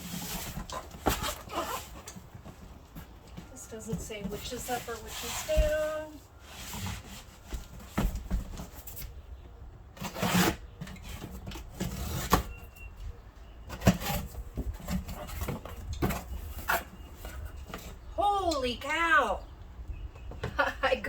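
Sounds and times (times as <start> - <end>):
cardboard rubbing and scraping: 0.0 - 9.2, 10.0 - 12.6.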